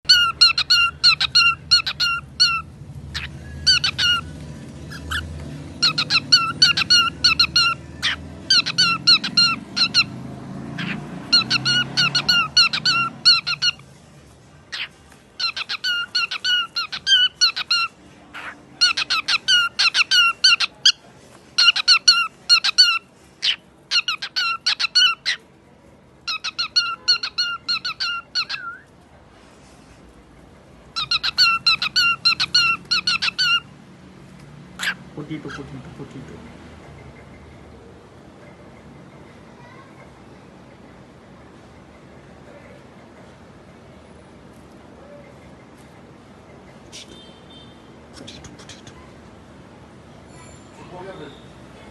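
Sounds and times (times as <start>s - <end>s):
parrot squeaky chirps: 0.0s - 13.9s, 14.7s - 21.0s, 21.6s - 25.5s, 26.2s - 28.9s, 30.9s - 33.8s, 34.8s - 35.7s.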